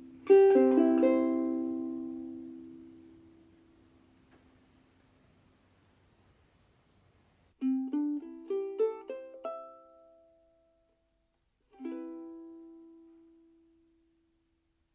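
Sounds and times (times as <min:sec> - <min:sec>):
ukulele plucked notes: 0:00.0 - 0:02.8, 0:07.6 - 0:10.8, 0:11.7 - 0:14.1
ukulele chord ringing: 0:00.0 - 0:03.0, 0:07.6 - 0:10.8, 0:11.7 - 0:14.0.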